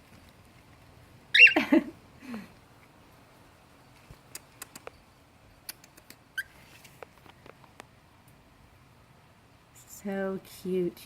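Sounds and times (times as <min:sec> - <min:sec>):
cockatiel squawk: 0:01.3 - 0:01.6
bird chirp: 0:01.3 - 0:01.7.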